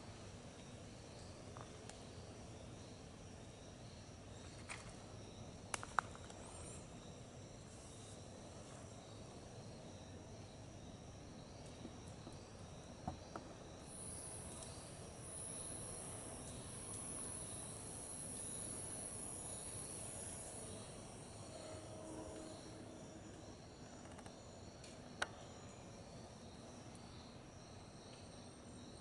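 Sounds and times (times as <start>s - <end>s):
insects chirping: 0.0s - 29.0s
high insect buzz: 12.8s - 24.8s.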